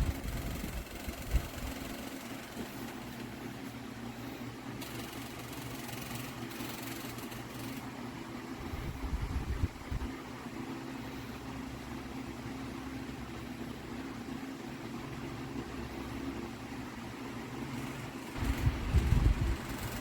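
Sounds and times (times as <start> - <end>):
electric fan running: 0.0 - 20.0.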